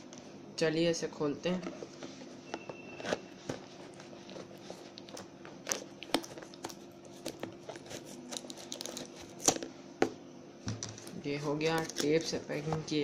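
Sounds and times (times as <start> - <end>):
box and tape clicks and crinkles: 2.5 - 9.7.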